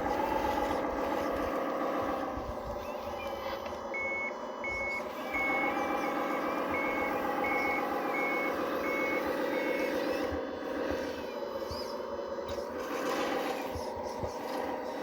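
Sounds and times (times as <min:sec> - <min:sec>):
electric motor whine: 0:00.0 - 0:15.0
short high reversing beeps: 0:02.8 - 0:10.2.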